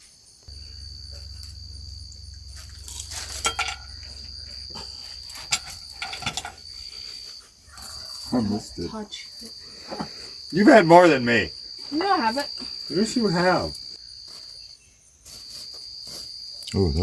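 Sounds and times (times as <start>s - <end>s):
crickets chirping: 0.0s - 17.0s
low hum: 0.5s - 8.2s.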